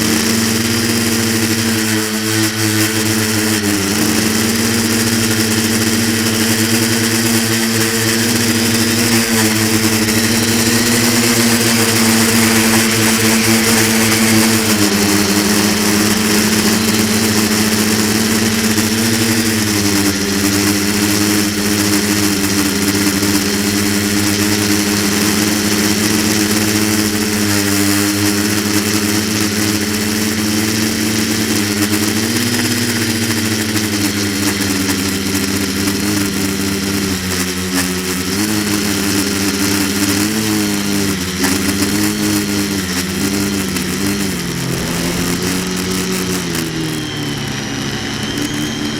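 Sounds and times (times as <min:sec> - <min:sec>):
drone motors buzzing: 0:00.0 - 0:30.3, 0:41.3 - 0:48.9.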